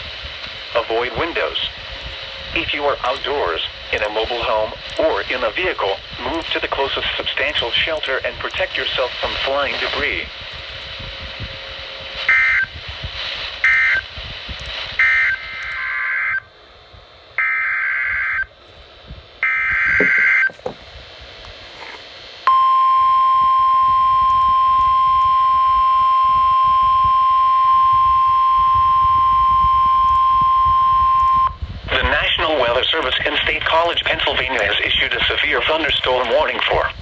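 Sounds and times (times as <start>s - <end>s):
steady warning alarm tone: 11.7s - 12.8s, 13.6s - 16.5s, 17.4s - 18.5s, 19.4s - 20.7s, 22.4s - 31.6s
warbling data bursts: 19.4s - 20.6s.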